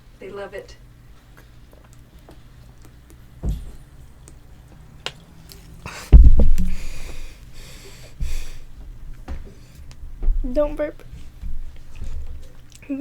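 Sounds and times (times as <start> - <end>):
low thumps: 3.4 - 3.9, 6.1 - 7.3, 8.2 - 12.4.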